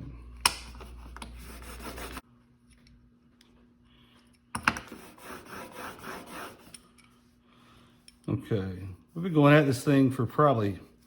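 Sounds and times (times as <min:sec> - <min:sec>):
metal scraping on sandpaper: 0:04.9 - 0:06.8.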